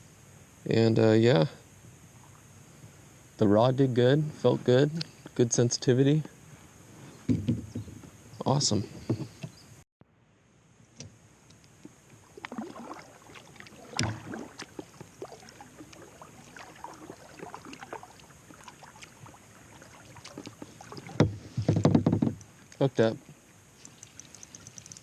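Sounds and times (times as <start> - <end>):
paddle knocks and splashes: 12.4 - 22.4.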